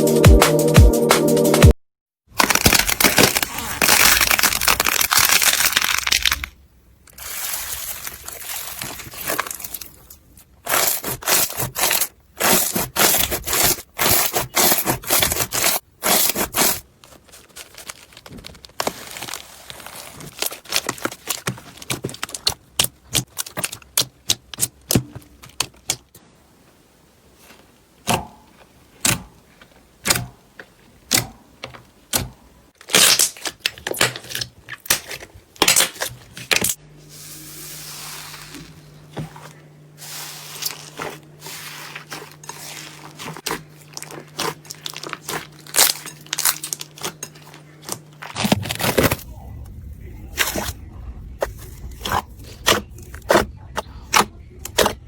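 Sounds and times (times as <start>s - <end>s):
steady low hum: 36.7s - 55.0s.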